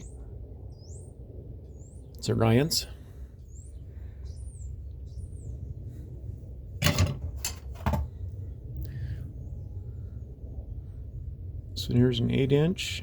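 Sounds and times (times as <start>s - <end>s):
faint bird chirps: 0.0s - 2.4s
screwdrivers knocking: 6.8s - 8.1s.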